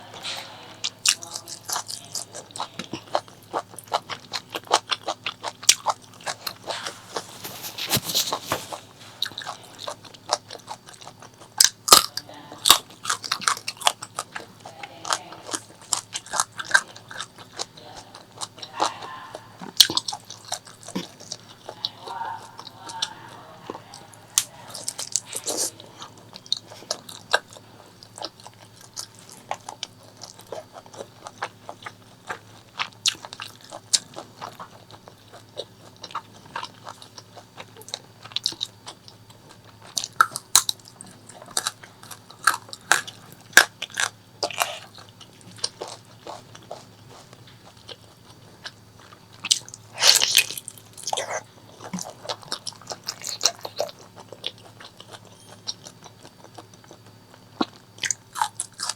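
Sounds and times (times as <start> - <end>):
biting and chewing: 0.1 - 58.9.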